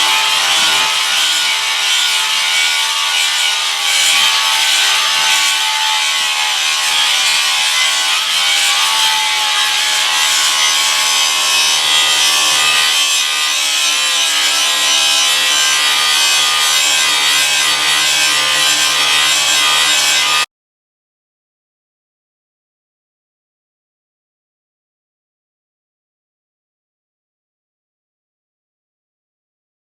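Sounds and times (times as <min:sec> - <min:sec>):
abrasive sanding: 0:00.0 - 0:20.4.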